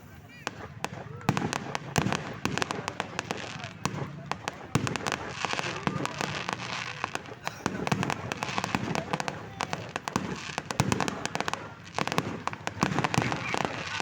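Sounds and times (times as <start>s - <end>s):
fireworks cracking and popping: 0.0s - 14.0s.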